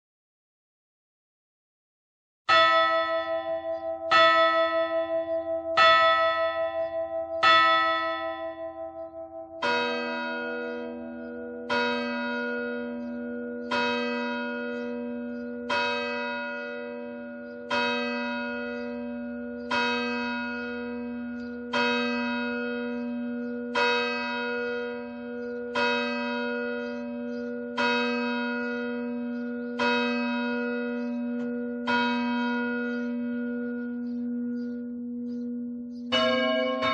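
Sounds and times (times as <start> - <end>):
church bell tolling: 2.5 - 36.9
deeper-toned bell tolling: 2.5 - 36.9.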